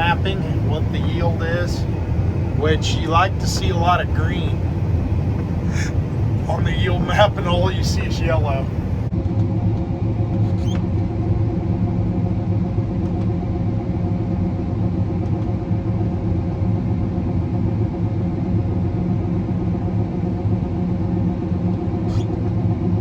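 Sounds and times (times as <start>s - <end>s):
combine harvester hum inside cab: 0.0s - 9.1s.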